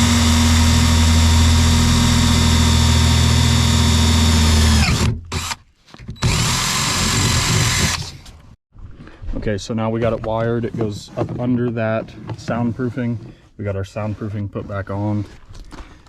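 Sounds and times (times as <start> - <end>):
power drill boring: 0.0 - 5.6, 6.2 - 8.2.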